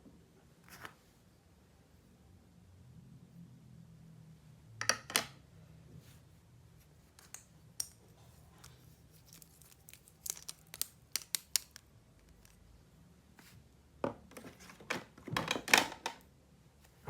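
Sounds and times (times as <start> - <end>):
packaging crackling snaps: 9.2 - 12.6.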